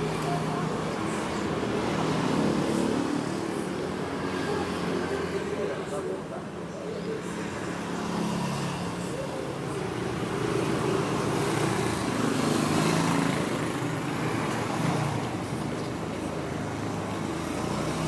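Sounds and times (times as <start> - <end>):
road traffic noise: 0.0 - 18.0.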